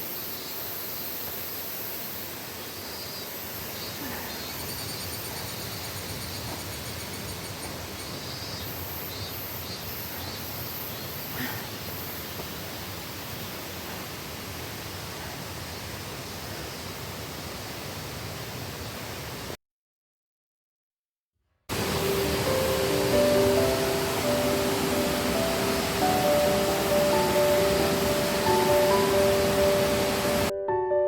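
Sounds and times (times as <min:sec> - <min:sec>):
waterfall rushing: 0:11.2 - 0:19.5, 0:21.7 - 0:30.5.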